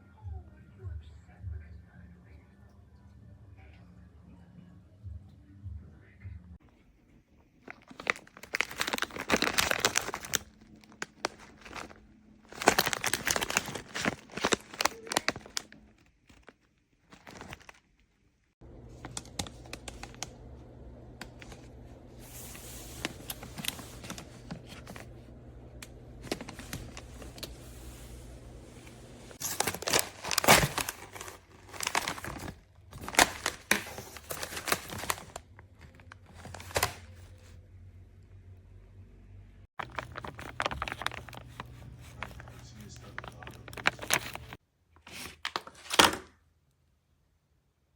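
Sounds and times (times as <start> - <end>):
plastic crinkling: 7.3 - 20.6, 21.2 - 37.3, 39.8 - 44.6
steady low hum: 18.6 - 29.4.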